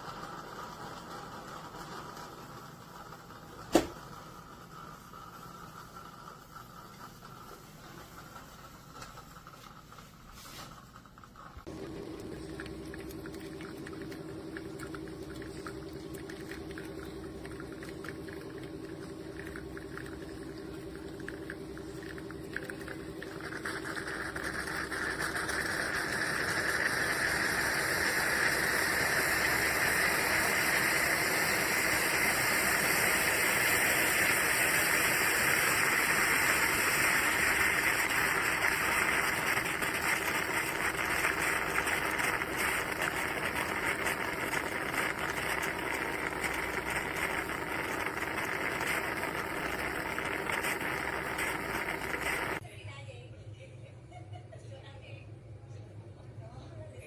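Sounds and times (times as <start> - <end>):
moka pot hissing: 0.0 - 52.6
stove burner humming: 0.0 - 52.6.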